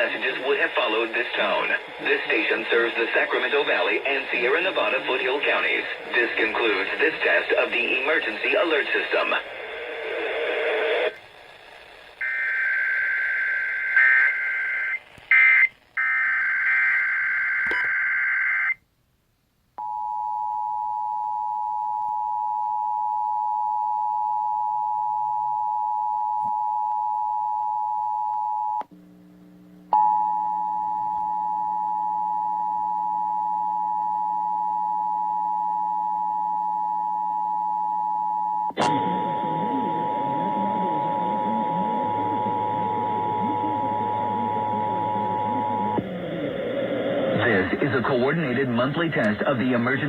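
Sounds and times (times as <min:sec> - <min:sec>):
low hum: 0:28.9 - 0:31.8, 0:38.8 - 0:49.4
two-tone attention signal: 0:38.8 - 0:46.0.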